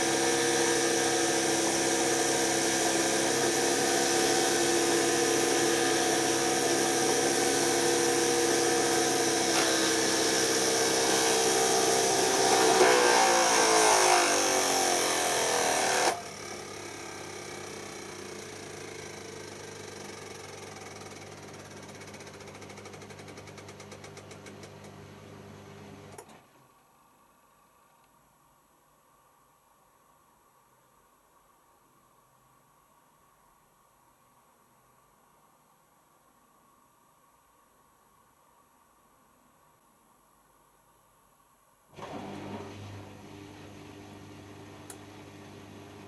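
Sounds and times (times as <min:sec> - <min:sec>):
washing machine motor whining: 0:00.0 - 0:20.3, 0:42.0 - 0:46.0.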